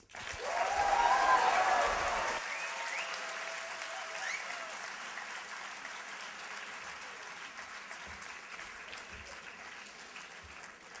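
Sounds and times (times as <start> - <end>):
audience applauding: 0.0 - 11.0.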